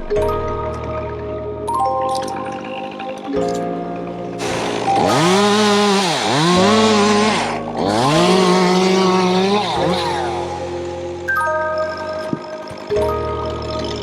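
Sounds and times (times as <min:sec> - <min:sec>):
background music: 0:00.0 - 0:14.0
chainsaw revving: 0:04.4 - 0:11.3.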